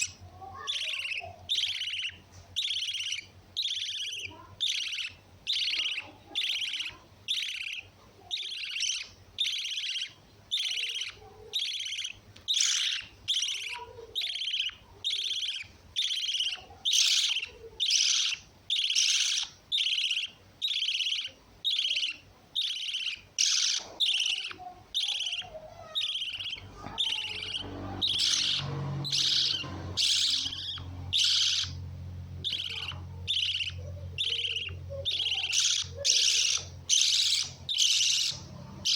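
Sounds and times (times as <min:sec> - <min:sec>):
lovebird chirping: 0:00.0 - 0:38.9
steady low hum: 0:24.8 - 0:38.9.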